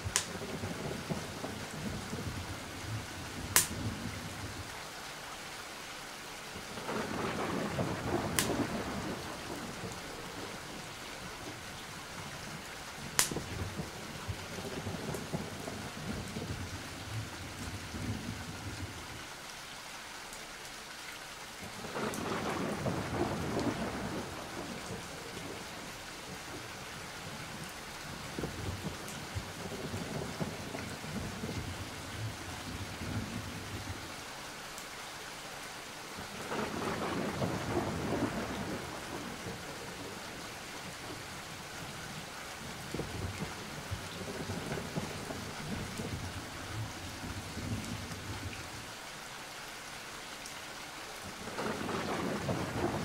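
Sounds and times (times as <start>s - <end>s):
thunder rolling: 0.0s - 4.6s, 6.8s - 10.6s, 13.3s - 19.0s, 21.8s - 25.6s, 28.3s - 34.0s, 36.4s - 40.3s, 42.7s - 48.6s, 51.4s - 53.0s
steady rain: 0.0s - 53.0s.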